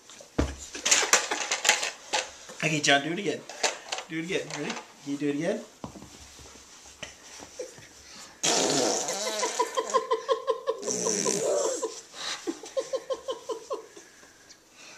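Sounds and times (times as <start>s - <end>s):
fluttering fart-like noise: 8.4s - 9.8s, 10.8s - 11.8s.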